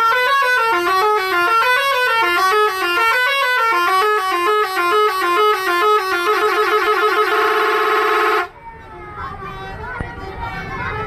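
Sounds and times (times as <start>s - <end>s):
musical bus horn melody: 0.0s - 8.6s.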